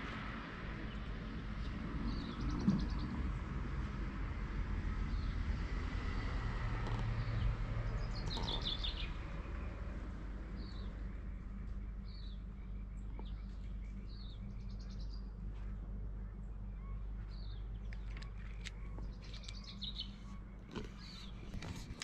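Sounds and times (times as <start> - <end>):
steady low rumble: 0.0 - 22.0
small birds chirping: 6.8 - 22.0.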